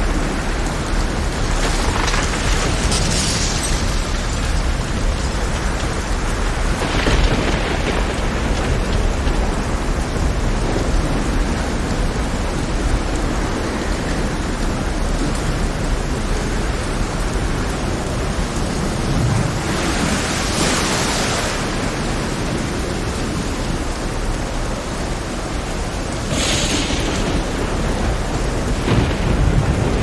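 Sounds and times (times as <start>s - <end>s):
heavy rain hiss: 0.0s - 30.0s.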